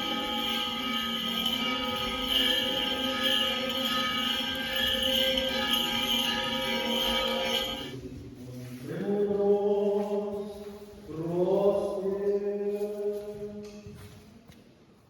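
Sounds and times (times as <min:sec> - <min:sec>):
liturgical chanting: 0:00.0 - 0:14.1.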